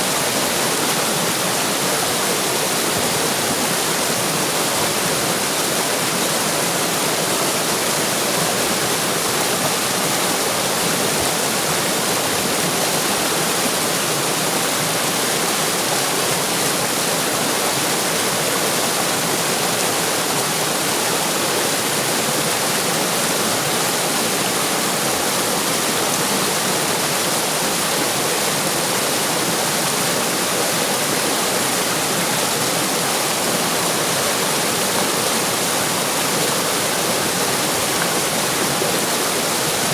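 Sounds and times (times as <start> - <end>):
water rushing and splashing: 0.0 - 39.9.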